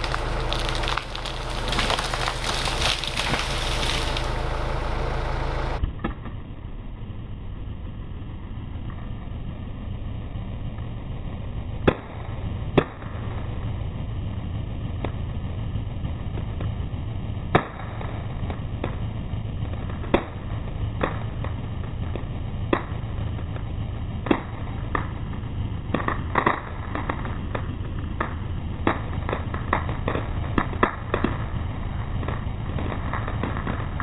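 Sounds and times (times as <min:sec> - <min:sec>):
trees crashing down: 0:00.0 - 0:06.2
sharp cracks: 0:00.0 - 0:06.3, 0:19.7 - 0:34.0
low engine hum: 0:00.0 - 0:34.0.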